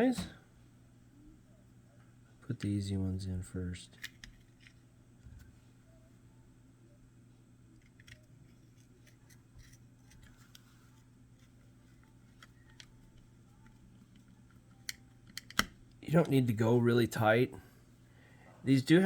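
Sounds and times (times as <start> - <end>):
low steady hum: 0.0 - 19.0
screwdriver clicking on plastic: 7.8 - 10.6, 11.4 - 15.9.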